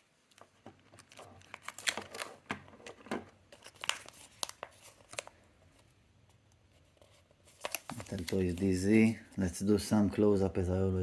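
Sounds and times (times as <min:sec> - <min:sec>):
packaging crinkling and tearing: 0:00.2 - 0:05.9, 0:07.1 - 0:09.2.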